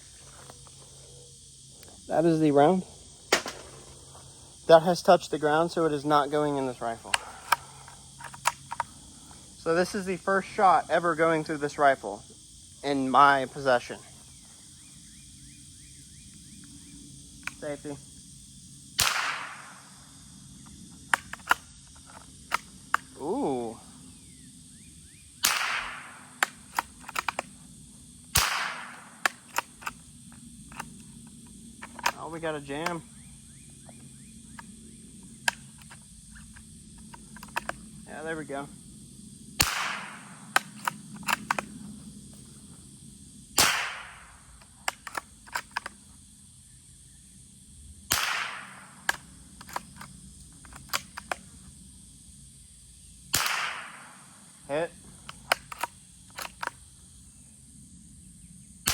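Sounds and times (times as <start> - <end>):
rifle shots with echo: 3.3 - 3.9, 19.0 - 19.9, 25.4 - 26.4, 28.3 - 29.4, 39.6 - 41.6, 43.6 - 44.4, 48.1 - 49.1, 53.3 - 54.2
rifle bolt metallic clicks: 25.5 - 27.5, 28.4 - 30.0, 30.7 - 31.0, 35.4 - 37.8, 39.6 - 41.7, 44.9 - 45.9, 48.2 - 51.4, 55.3 - 56.8
rifle bolt clicks: 39.6 - 41.7.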